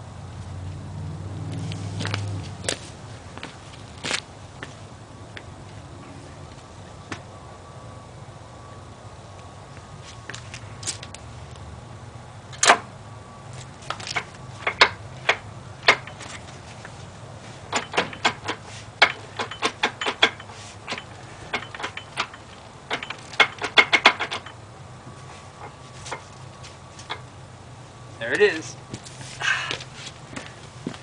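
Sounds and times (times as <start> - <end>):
sharp metal clicks and knocks: 12.5 - 12.9, 13.9 - 16.5, 17.7 - 24.6.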